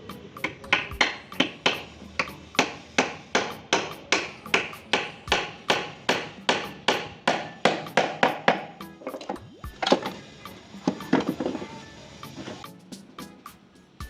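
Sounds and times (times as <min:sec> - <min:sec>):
sharp ringing knocks: 0:00.7 - 0:08.8.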